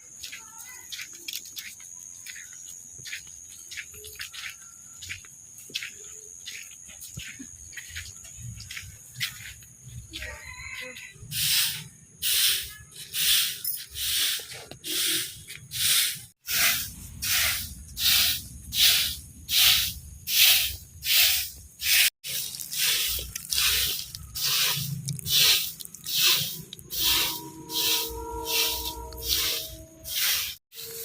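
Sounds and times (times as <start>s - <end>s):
rhythmic hissing scraping strokes: 10.9s - 31.0s.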